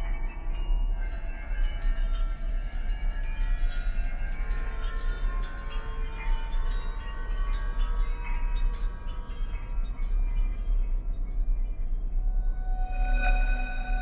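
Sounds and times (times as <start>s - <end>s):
metallic chime-like rings tinkling: 12.6s - 14.0s.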